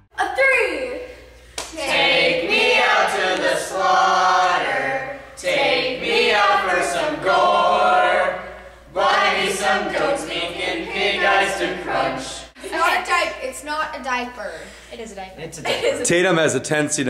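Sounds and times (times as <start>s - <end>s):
voices singing together: 1.7s - 13.0s.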